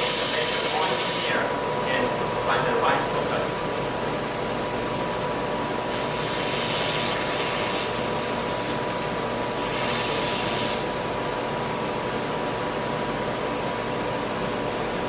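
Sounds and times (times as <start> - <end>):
laser drilling machine hissing: 0.0 - 1.5, 5.8 - 11.0.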